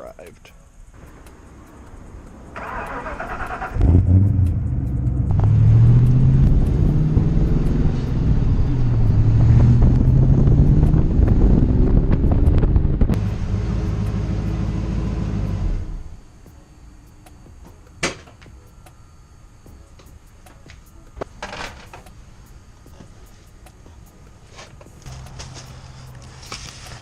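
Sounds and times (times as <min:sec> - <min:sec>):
car engine revving: 0:01.2 - 0:16.2.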